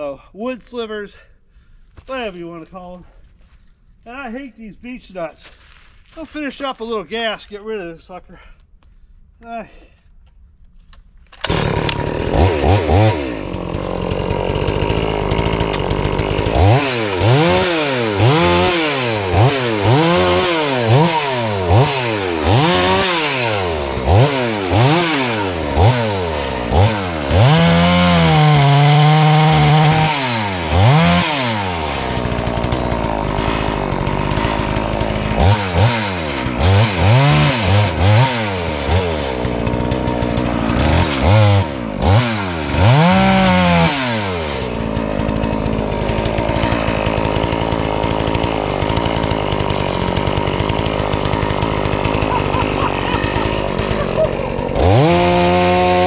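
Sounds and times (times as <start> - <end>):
chainsaw revving cutting wood: 11.4 - 56.0.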